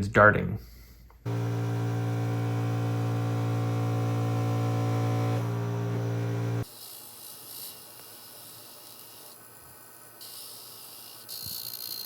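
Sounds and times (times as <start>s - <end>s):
electric hum: 1.3s - 6.6s.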